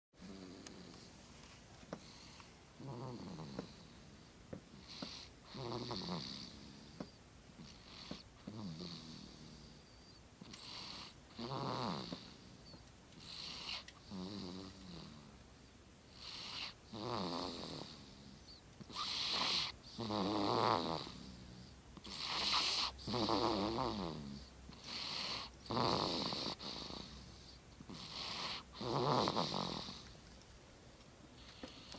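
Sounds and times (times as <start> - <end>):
man snoring: 2.8 - 3.8, 4.9 - 6.6, 7.9 - 9.5, 10.6 - 12.3, 13.3 - 15.2, 16.2 - 18.1, 18.9 - 21.4, 22.0 - 27.1, 27.9 - 30.0.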